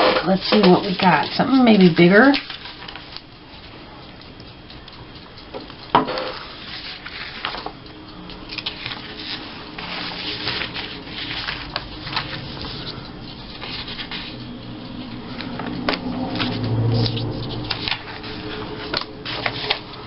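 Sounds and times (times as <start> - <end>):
paper and plastic rustling: 8.5 - 14.3, 16.4 - 20.0.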